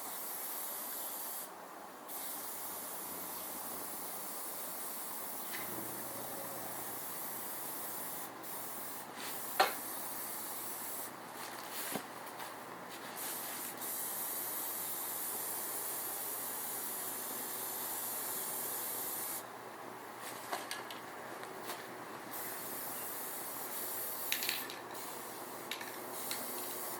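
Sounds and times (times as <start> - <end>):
spray paint hissing: 0.0 - 1.5, 2.1 - 11.1, 13.0 - 19.4, 22.3 - 26.9.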